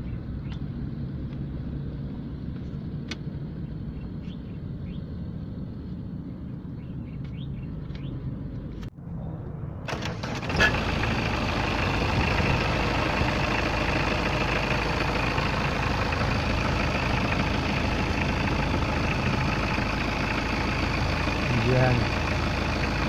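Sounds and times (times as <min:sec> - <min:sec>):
car engine starting and idling: 0:06.8 - 0:23.0.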